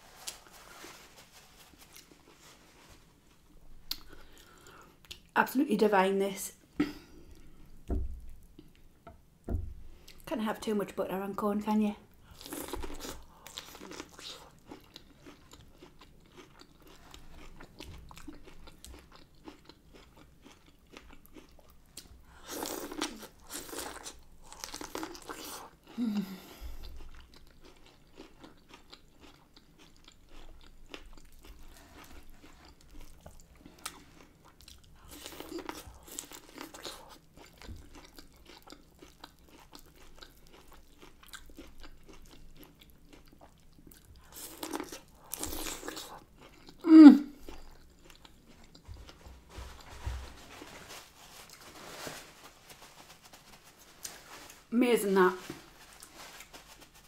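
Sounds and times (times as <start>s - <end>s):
chewing corn on the cob: 12.3s - 49.2s
person humming: 46.8s - 47.4s.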